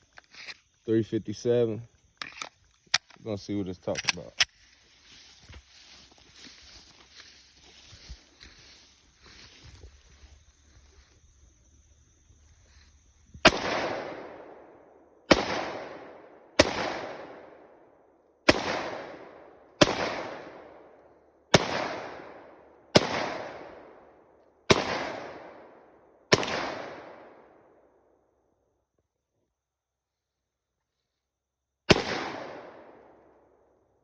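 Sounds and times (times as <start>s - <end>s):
pistol shots with echo: 13.4s - 14.6s, 15.3s - 17.6s, 18.5s - 20.8s, 21.5s - 23.9s, 24.7s - 25.7s, 26.3s - 27.3s, 31.9s - 33.1s.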